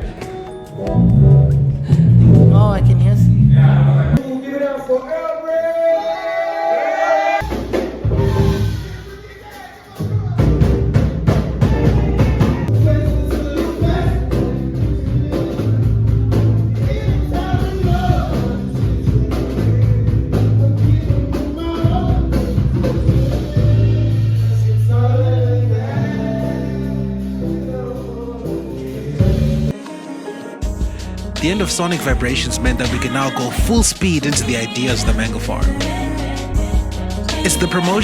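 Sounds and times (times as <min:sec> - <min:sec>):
heavy bass-driven beat: 0:00.8 - 0:04.2, 0:30.6 - 0:38.0
person singing: 0:23.2 - 0:38.0.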